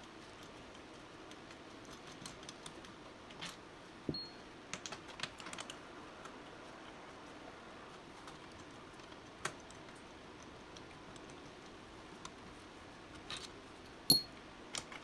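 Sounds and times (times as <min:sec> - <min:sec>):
metallic clink ringing: 0:04.1 - 0:04.4, 0:14.1 - 0:14.4
metal tools clicking and tapping: 0:14.1 - 0:15.0.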